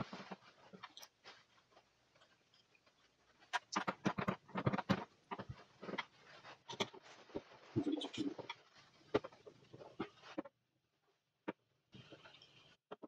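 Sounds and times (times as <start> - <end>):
sharp clicks and taps on plastic: 3.5 - 6.1.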